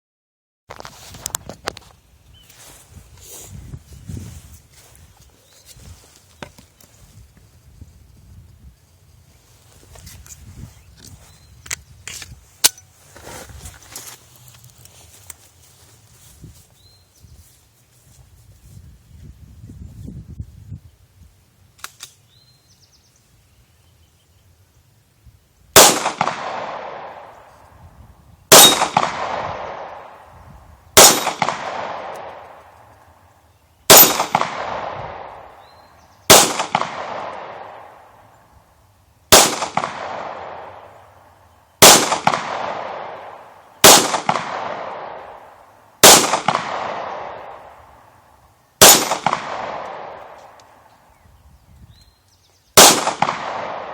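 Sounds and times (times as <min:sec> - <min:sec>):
pistol shots with echo: 0:25.8 - 0:27.5, 0:28.5 - 0:30.3, 0:31.0 - 0:32.8, 0:33.9 - 0:35.6, 0:36.3 - 0:38.2, 0:39.3 - 0:40.9, 0:41.8 - 0:47.7, 0:48.8 - 0:50.8, 0:52.8 - 0:53.9.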